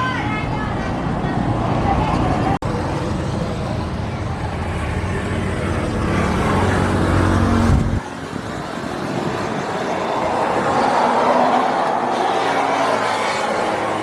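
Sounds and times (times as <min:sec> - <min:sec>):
rushing noise: 0:00.0 - 0:14.0
engine running: 0:02.6 - 0:10.2.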